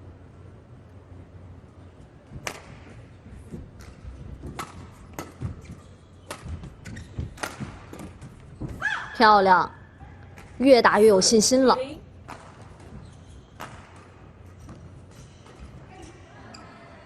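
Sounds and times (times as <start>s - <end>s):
sports hall hum: 0.0s - 17.0s
rackets striking shuttlecock: 2.4s - 2.9s, 13.6s - 15.6s.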